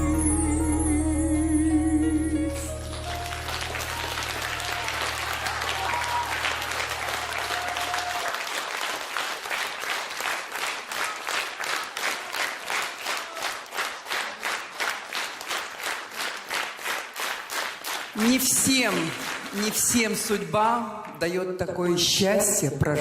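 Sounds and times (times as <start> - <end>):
band playing held chord: 0.0 - 8.0
audience applauding: 2.8 - 20.1
clapping in unison: 2.9 - 19.9.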